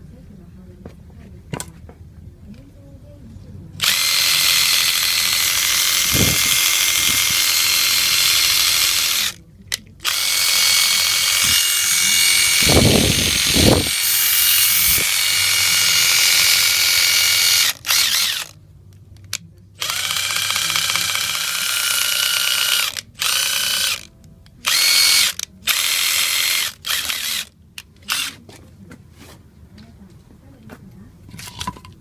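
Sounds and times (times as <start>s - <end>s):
impact driver whining: 3.8s - 9.4s, 10.0s - 18.6s, 19.3s - 24.1s, 24.7s - 28.4s.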